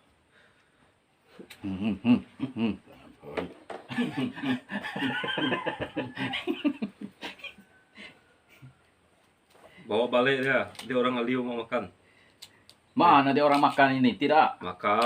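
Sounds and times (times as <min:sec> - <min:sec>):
people chuckling: 0:01.5 - 0:03.1, 0:03.8 - 0:08.8
high-pitched laugh: 0:03.9 - 0:07.7.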